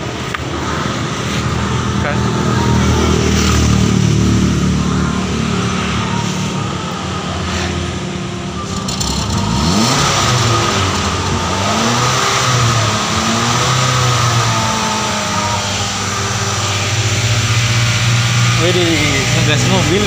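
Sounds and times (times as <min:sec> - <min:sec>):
car engine revving: 0:00.0 - 0:20.0.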